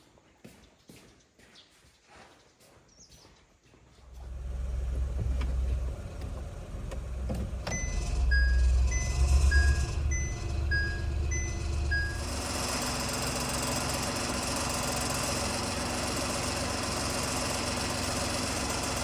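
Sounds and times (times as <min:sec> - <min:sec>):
car engine idling: 0:04.1 - 0:19.0
gear shift click: 0:04.2 - 0:12.2
reverse warning beeps: 0:07.6 - 0:12.4.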